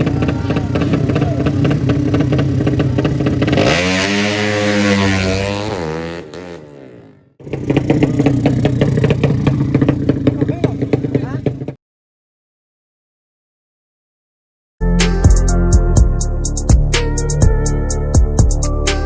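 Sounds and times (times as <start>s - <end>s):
motorcycle engines racing: 0.0s - 11.8s.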